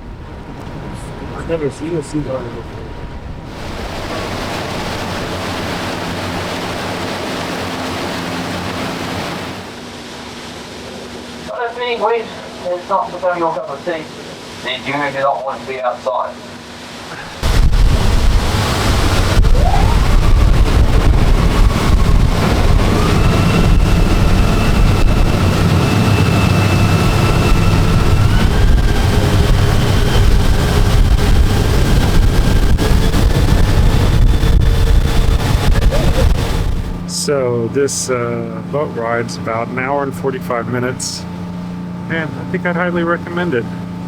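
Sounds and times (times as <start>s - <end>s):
strong wind on microphone: 0.0s - 9.7s, 17.4s - 37.1s
boat engine hum: 0.0s - 44.0s.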